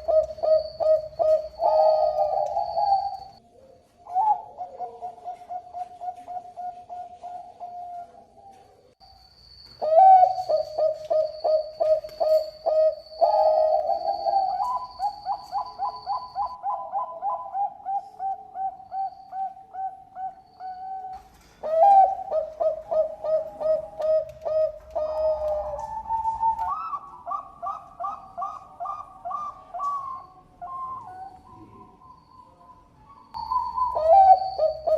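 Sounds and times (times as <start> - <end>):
dove cooing: 0.0 - 8.9, 9.8 - 34.9.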